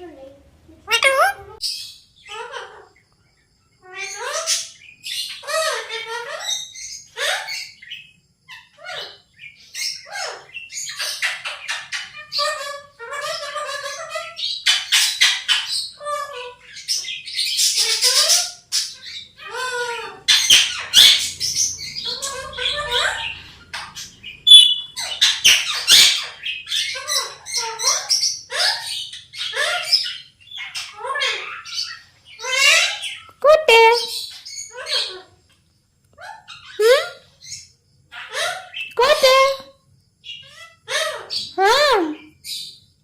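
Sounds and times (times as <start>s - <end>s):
parrot squawking and chirping: 0.8s - 2.9s, 3.8s - 35.4s, 36.2s - 42.8s
parrot clicking chatter: 0.9s - 1.6s.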